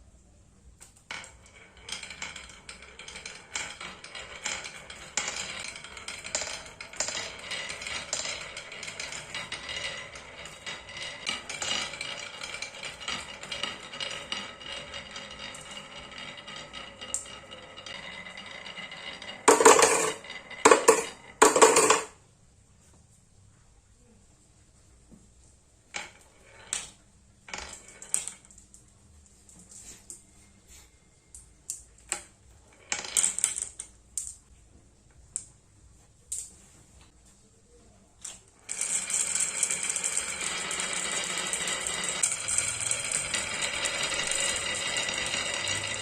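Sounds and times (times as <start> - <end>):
marbles clattering: 0.8 - 22.2, 26.0 - 28.8, 38.2 - 46.0
marbles rolling down wooden run: 0.8 - 22.2, 25.9 - 28.9, 31.3 - 34.5, 38.3 - 46.0.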